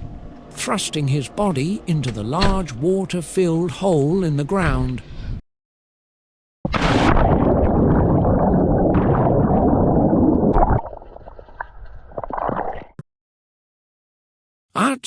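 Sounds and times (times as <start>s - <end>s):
person plunging into pool: 6.7s - 13.0s.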